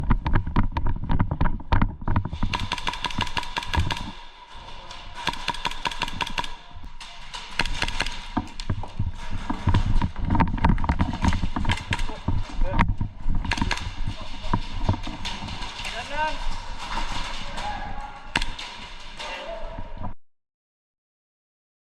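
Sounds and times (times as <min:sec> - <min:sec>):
airsoft guns firing in bursts: 0:02.3 - 0:09.6, 0:11.1 - 0:12.6, 0:13.3 - 0:17.6, 0:18.2 - 0:19.3.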